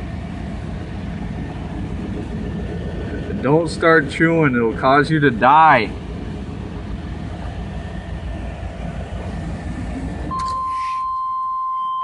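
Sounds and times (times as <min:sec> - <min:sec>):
pickup truck engine idling: 0:00.0 - 0:10.4
electronic warning beep: 0:10.3 - 0:12.0.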